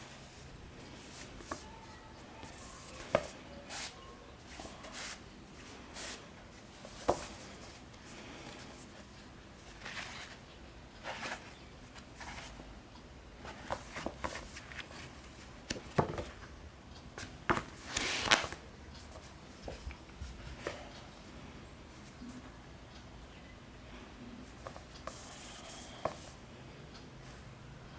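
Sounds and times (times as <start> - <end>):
books clicking and tapping: 0.1 - 1.8, 2.4 - 3.8, 6.8 - 8.9, 13.4 - 16.5, 17.2 - 18.6
paper rustling and riffling: 17.8 - 18.6.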